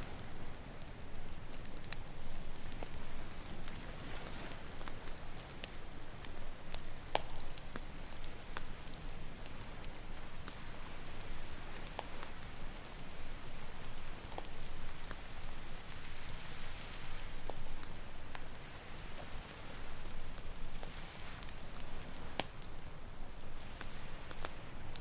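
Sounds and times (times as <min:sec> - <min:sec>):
campfire crackling and popping: 0:00.0 - 0:25.0
ocean waves washing ashore: 0:00.0 - 0:25.0.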